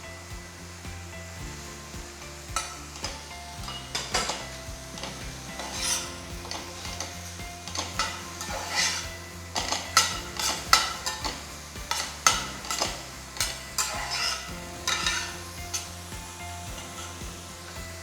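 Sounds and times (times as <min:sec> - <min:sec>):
food sizzling in a pan: 0:00.0 - 0:18.0
utensil scraping a pan: 0:02.5 - 0:15.9.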